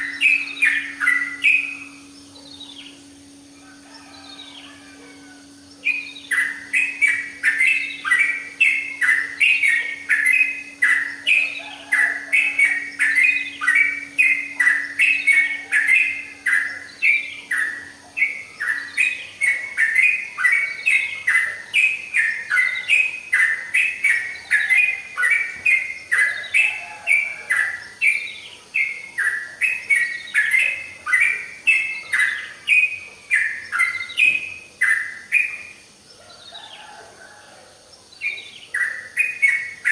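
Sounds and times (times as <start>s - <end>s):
bird singing whistled notes: 0.0s - 35.8s, 38.1s - 39.9s
faint steady hum: 0.0s - 39.9s.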